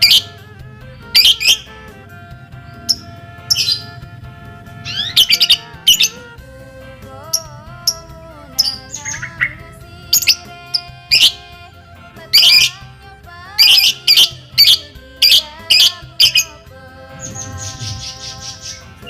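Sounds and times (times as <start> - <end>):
lovebird chirping: 0.0 - 0.4, 1.1 - 1.8, 2.6 - 4.0, 4.8 - 6.2, 7.3 - 11.5, 12.3 - 12.8, 13.6 - 16.6, 17.2 - 19.0
background music: 0.0 - 19.0.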